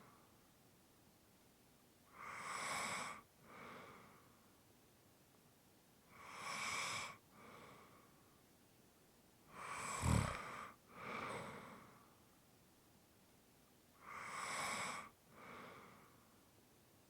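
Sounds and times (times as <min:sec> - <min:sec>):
person snoring: 0:09.5 - 0:11.7.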